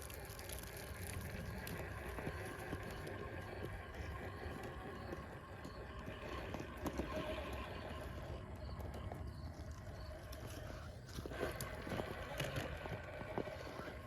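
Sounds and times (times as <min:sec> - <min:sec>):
electric motor whine: 0:00.0 - 0:14.0
tires scraping on stone: 0:00.0 - 0:14.0.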